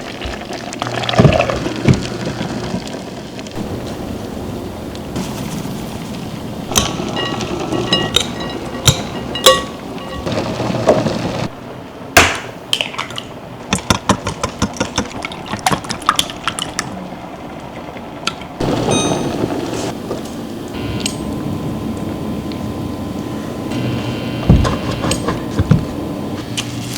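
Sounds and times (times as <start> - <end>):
dishes clinking: 6.7 - 11.5, 18.6 - 20.3.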